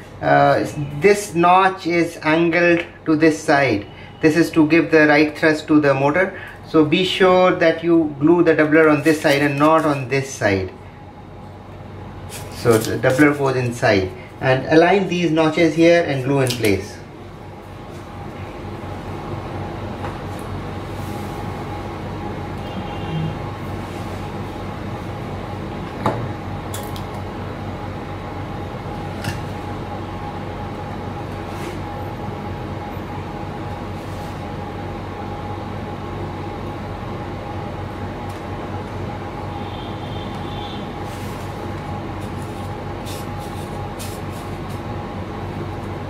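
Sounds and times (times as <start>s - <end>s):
machine humming: 17.0s - 46.0s.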